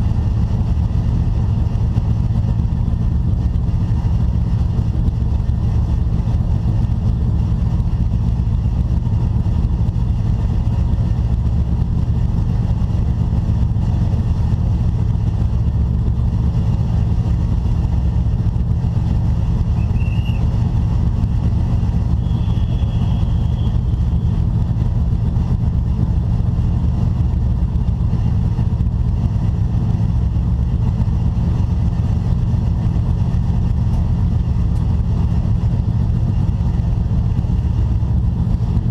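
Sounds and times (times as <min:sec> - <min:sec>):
racing engine rumble: 0:00.0 - 0:38.9.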